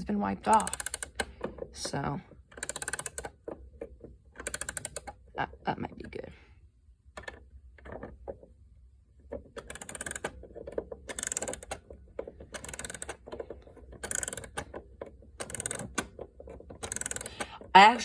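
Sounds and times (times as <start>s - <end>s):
clock key ratchet clicks: 0.5s - 1.3s, 2.5s - 3.3s, 4.4s - 5.1s, 9.6s - 10.3s, 11.1s - 11.8s, 12.5s - 13.2s, 14.0s - 14.6s, 15.4s - 16.1s, 16.8s - 17.5s.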